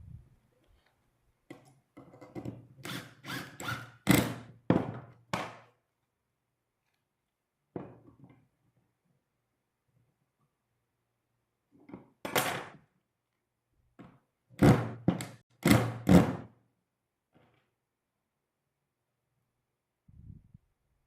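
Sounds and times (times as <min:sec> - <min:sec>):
wooden knocks and thunks: 0:04.7 - 0:05.5.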